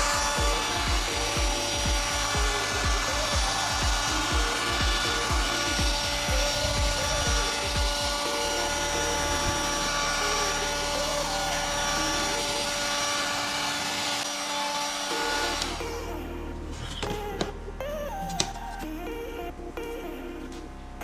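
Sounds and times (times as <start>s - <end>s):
steady low hum: 0.0s - 14.3s.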